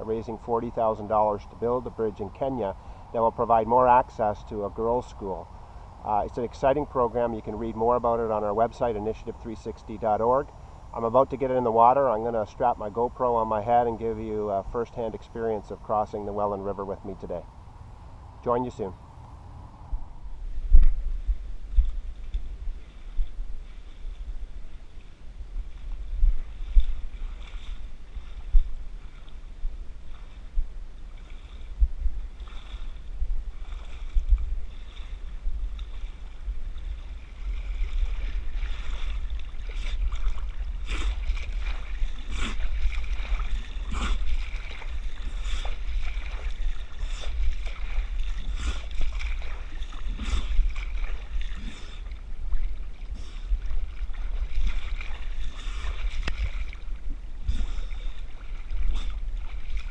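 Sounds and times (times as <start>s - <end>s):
low wind rumble: 13.9s - 59.9s
water splashing: 20.6s - 59.9s.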